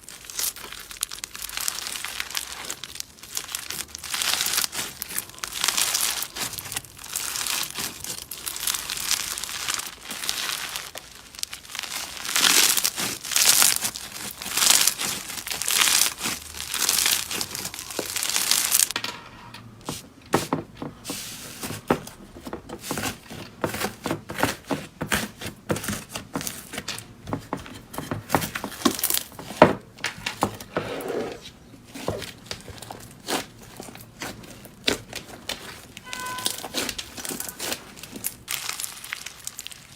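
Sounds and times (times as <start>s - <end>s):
slime crackling when squeezed: 0.0s - 19.0s, 32.8s - 39.9s.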